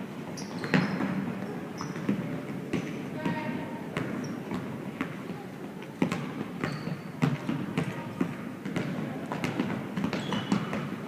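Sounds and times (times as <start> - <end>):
murmur of voices: 1.0 - 10.0.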